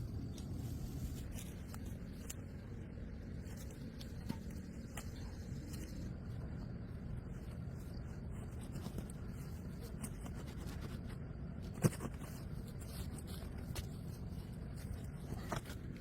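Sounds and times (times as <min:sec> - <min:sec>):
faint scratching and ticking: 0:00.0 - 0:16.0
steady low rumble: 0:00.0 - 0:16.0.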